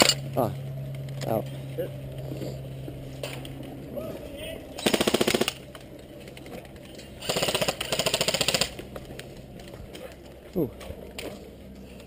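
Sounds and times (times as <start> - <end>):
airsoft rifle full-auto bursts: 4.8 - 5.6, 7.2 - 8.8.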